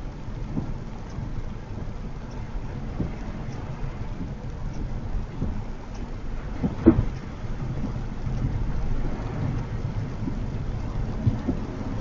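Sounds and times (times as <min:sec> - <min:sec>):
rain hissing: 0:00.0 - 0:12.0
tyre and road noise: 0:00.0 - 0:12.0
small thumps: 0:06.6 - 0:11.7.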